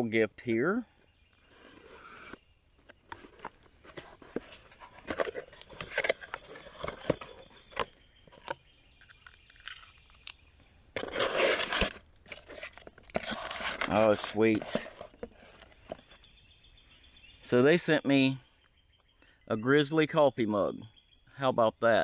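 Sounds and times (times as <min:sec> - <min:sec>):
cardboard rustle: 0:01.6 - 0:08.6, 0:11.0 - 0:16.2.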